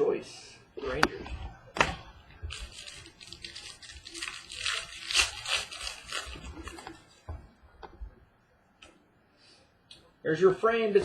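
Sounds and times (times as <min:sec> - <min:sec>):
plastic packaging crinkling: 0:02.4 - 0:07.2.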